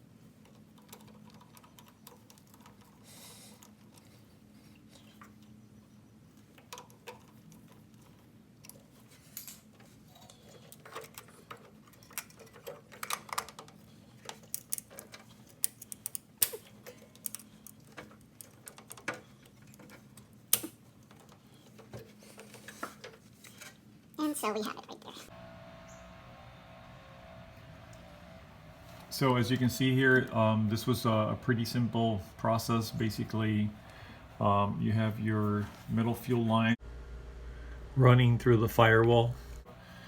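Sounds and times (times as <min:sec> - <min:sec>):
faint steady hum: 0:00.0 - 0:40.0
tools clicking and tapping: 0:08.6 - 0:23.2.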